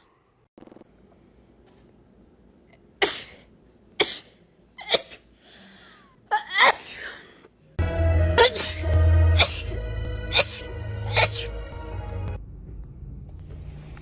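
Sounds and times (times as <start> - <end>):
person sneezing: 3.0 - 5.3, 6.3 - 7.4, 8.4 - 11.8.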